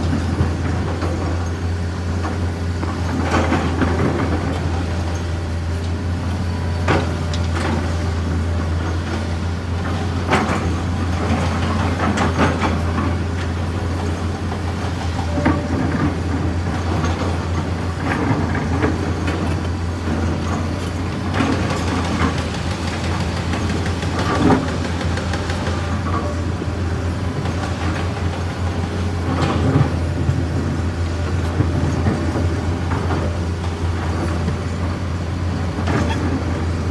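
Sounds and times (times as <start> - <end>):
excavator diesel engine droning: 0.0 - 36.9
knocks and clanks: 14.6 - 26.5.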